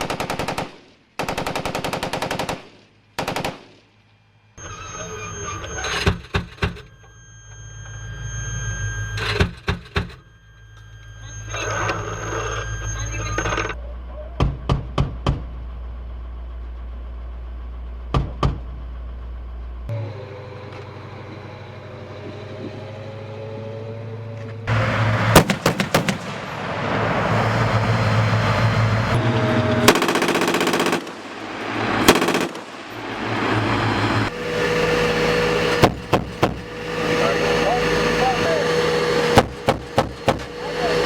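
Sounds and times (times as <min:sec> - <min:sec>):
chain gun firing bursts: 0:00.0 - 0:03.9, 0:25.4 - 0:26.3, 0:29.9 - 0:33.0
vehicle engine running: 0:13.0 - 0:41.0.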